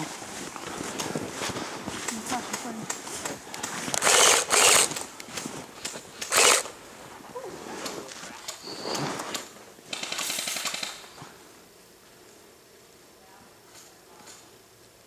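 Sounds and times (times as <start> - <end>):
airsoft guns firing bursts: 4.0 - 5.1, 6.2 - 6.7, 9.9 - 11.1.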